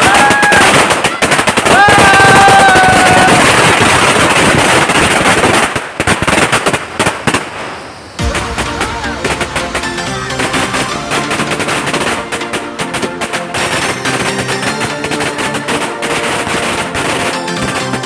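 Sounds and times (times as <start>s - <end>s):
firecracker string crackling: 0.0s - 18.0s
background music: 8.2s - 18.0s.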